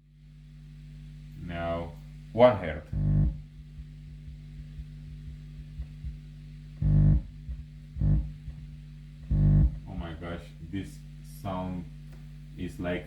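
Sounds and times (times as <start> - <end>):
subwoofer low buzzing hum: 0.0 - 13.0
loud distorted blurts: 2.8 - 3.5, 6.8 - 11.5
faint ticks: 2.9 - 10.2.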